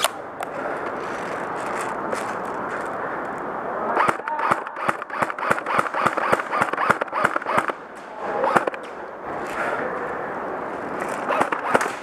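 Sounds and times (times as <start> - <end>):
airsoft guns firing: 4.0 - 7.8, 8.4 - 8.8, 11.2 - 12.0.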